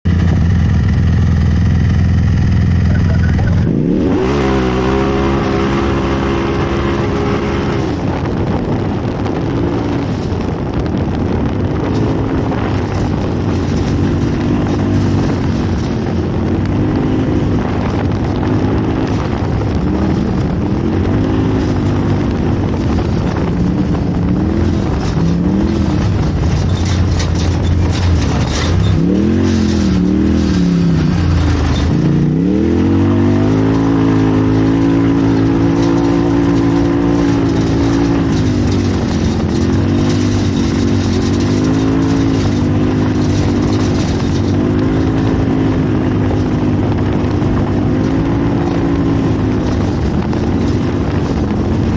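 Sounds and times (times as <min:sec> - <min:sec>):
race vehicle engine revving: 0:00.2 - 0:51.9.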